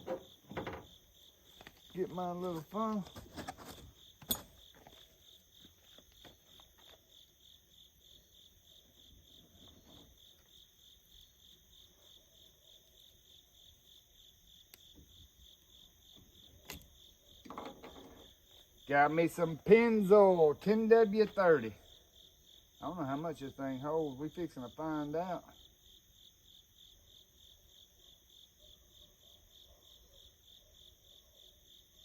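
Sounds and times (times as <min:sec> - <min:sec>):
crickets chirping: 0:00.0 - 0:32.0
handling clicks and knocks: 0:16.6 - 0:18.3.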